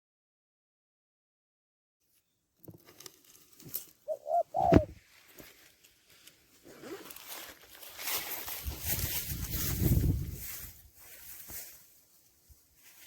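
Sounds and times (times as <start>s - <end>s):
dry straw rustling and crackling: 2.8s - 13.0s
dove cooing: 4.0s - 5.0s.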